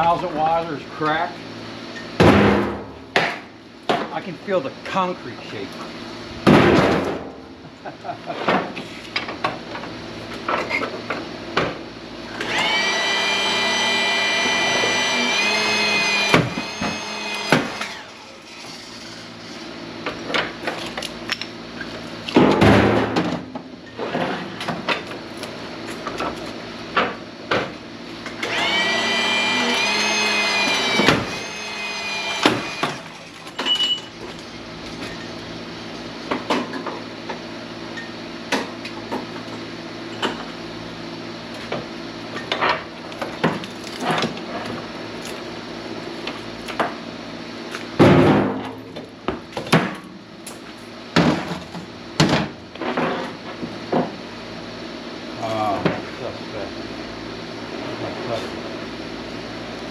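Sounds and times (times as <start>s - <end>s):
hydraulic pump whining: 12.3s - 19.7s, 28.2s - 35.3s.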